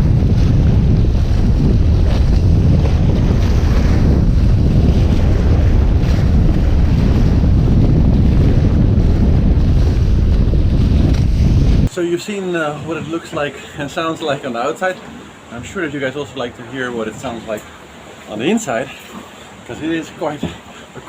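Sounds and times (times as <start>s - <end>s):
wind buffeting microphone: 0.0s - 12.0s
water rushing along hull: 0.0s - 21.0s.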